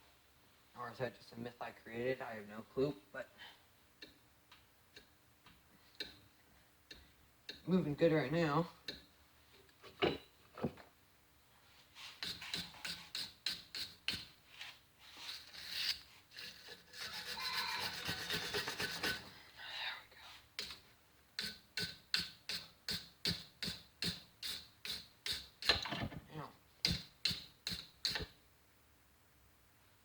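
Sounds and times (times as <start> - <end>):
rasping strokes on pliers: 12.0 - 19.3, 21.4 - 25.5, 26.8 - 28.3.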